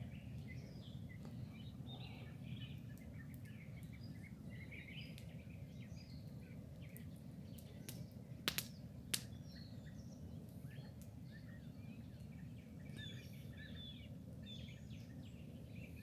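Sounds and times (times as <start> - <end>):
small birds chirping and singing: 0.0 - 16.0.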